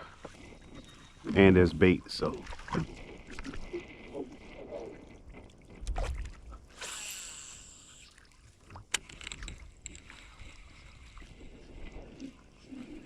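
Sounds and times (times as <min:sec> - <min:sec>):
hiss: 0:06.8 - 0:08.1.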